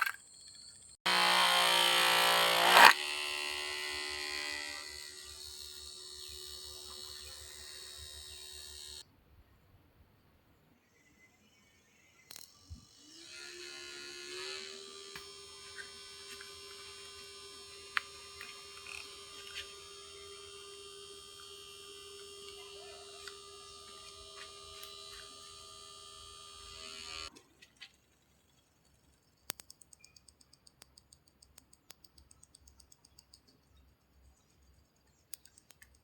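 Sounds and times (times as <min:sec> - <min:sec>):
electric motor whining: 0:01.0 - 0:09.0, 0:12.3 - 0:27.3
light ticks: 0:29.4 - 0:33.5.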